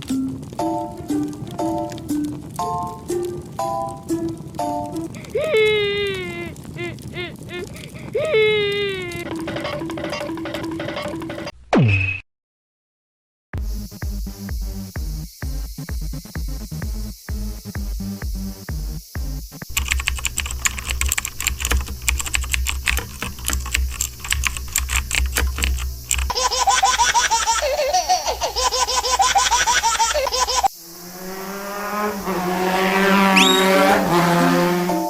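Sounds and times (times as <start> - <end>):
music: 0.0 - 5.1, 13.6 - 19.7
keyboard typing clicks: 19.7 - 26.3
low hum: 19.7 - 26.3, 30.8 - 34.9
warbling chirping sound: 30.8 - 34.8
steady pitched tone: 30.8 - 34.9.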